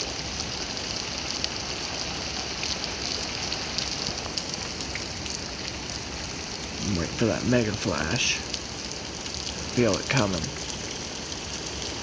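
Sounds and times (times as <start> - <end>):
heavy rain pouring: 0.0 - 12.0
raindrops spattering on surfaces: 0.1 - 12.0.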